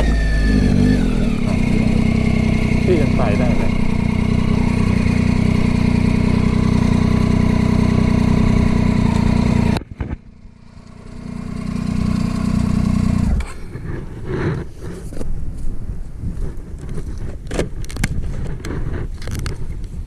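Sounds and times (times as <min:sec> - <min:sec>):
quieter engine passing: 0:00.0 - 0:14.0
motorcycle engine running: 0:00.0 - 0:15.2.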